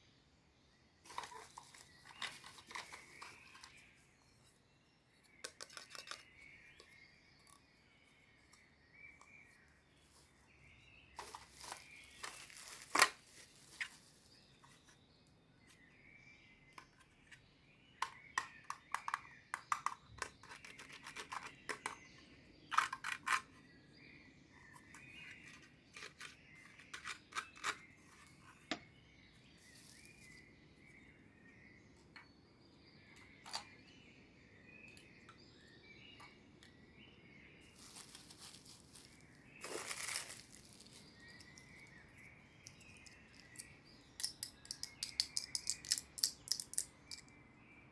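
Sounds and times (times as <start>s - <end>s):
packaging rustle: 11.2s - 14.4s, 37.7s - 41.9s
plastic toy pieces clicking: 42.7s - 47.3s.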